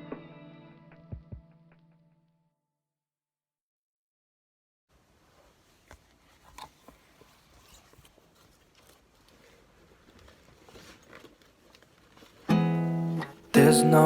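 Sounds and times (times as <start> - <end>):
faint handling clicks and rustles: 5.0 - 12.5.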